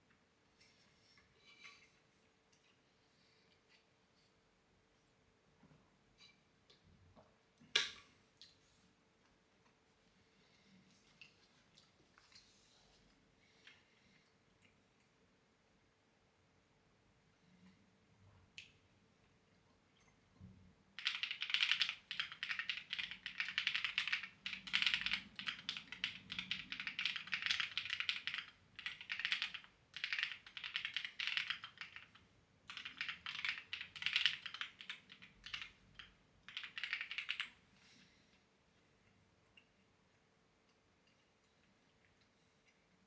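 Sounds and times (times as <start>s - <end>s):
faint steady hum: 0.0s - 43.0s
keyboard typing: 21.0s - 37.6s.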